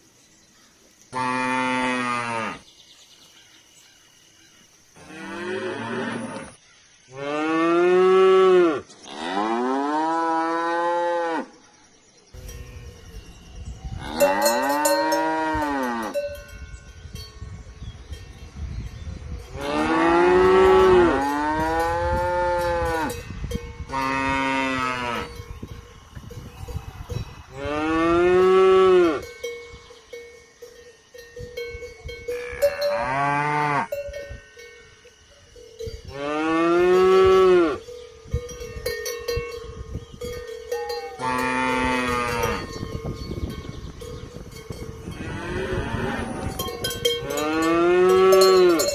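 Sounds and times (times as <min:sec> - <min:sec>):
cowbells clanking: 0:12.4 - 0:28.2, 0:28.8 - 0:48.9
cattle mooing: 0:45.2 - 0:48.9.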